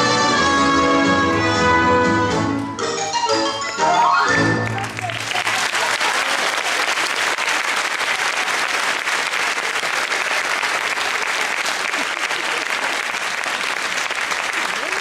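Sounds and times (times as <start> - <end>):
music: 0.0 - 5.2
audience applauding: 3.6 - 15.0.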